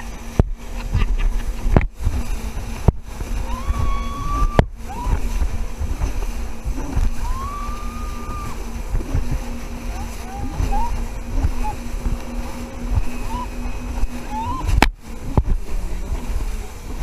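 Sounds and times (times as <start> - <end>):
jet ski engine hum: 0.0 - 17.0
water sloshing and slapping: 0.0 - 17.0
woman screaming: 3.4 - 5.2, 7.2 - 8.6
wind knocks on microphone: 14.7 - 15.8.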